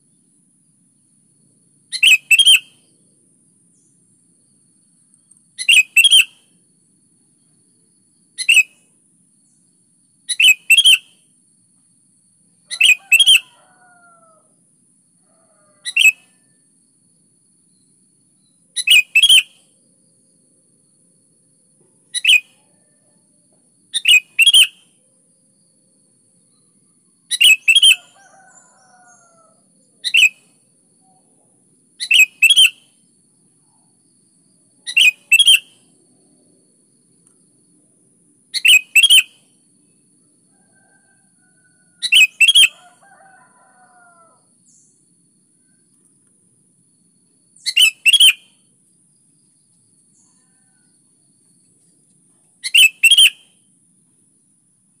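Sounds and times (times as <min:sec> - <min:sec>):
bulbul singing: 0:05.6 - 0:06.3, 0:47.6 - 0:48.4.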